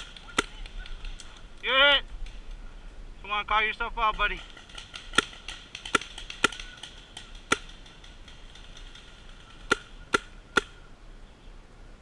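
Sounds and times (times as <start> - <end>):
paintball marker shots: 0.0 - 1.4, 4.5 - 10.8.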